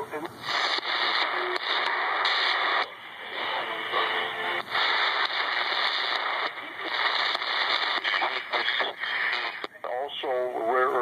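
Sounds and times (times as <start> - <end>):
faint radio station tones: 0.0 - 11.0
radio hiss and static: 0.0 - 11.0.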